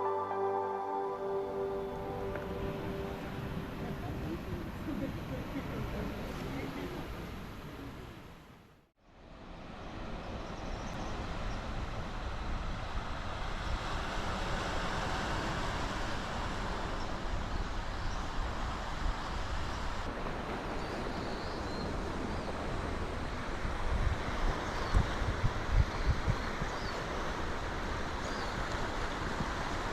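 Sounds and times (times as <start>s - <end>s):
wind buffeting microphone: 20.1s - 29.9s.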